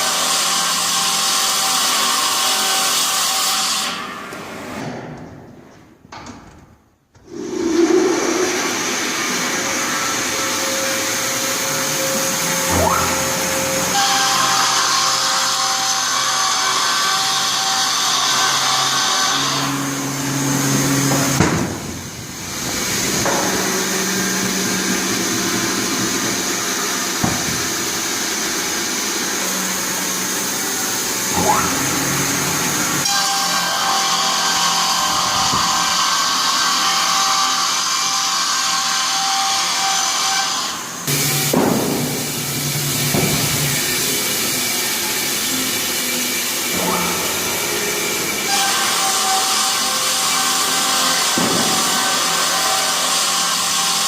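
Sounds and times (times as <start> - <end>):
saw machine running: 7.3 - 54.0.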